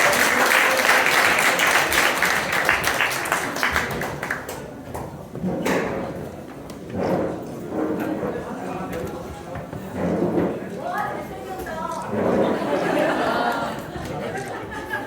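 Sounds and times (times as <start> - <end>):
crowd applauding: 0.0 - 4.5.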